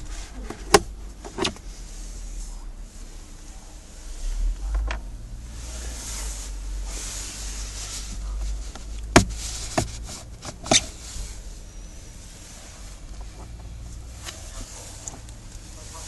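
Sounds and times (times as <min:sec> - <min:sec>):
hands rubbing plastic parts: 0:06.9 - 0:11.4.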